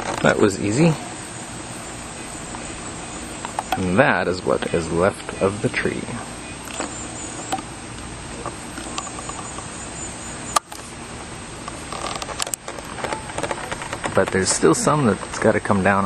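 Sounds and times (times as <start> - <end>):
steady background noise: 0.0 - 16.0
faint high chirps: 0.2 - 11.0
sharp click: 10.5 - 10.9.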